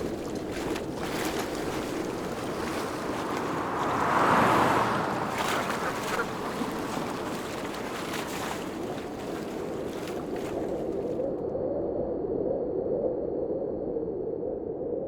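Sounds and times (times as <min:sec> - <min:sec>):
rushing water: 0:00.0 - 0:11.3
wind: 0:00.0 - 0:15.0.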